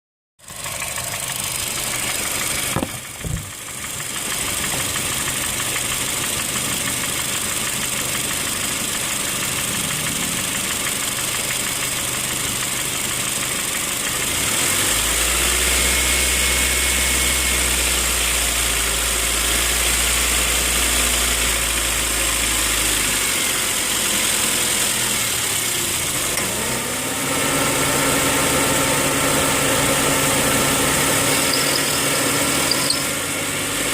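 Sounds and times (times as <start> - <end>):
car engine running with knock: 0.5 - 14.4.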